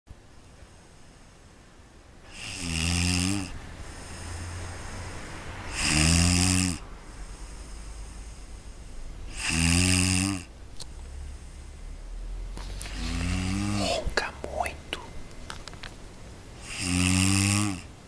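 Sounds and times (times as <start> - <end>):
quiet breathing: 0.3 - 2.6, 3.4 - 5.8, 6.8 - 9.6, 10.8 - 15.3
person snoring loudly: 2.3 - 4.3, 5.7 - 6.8, 9.3 - 10.5, 12.9 - 14.1, 16.6 - 17.9.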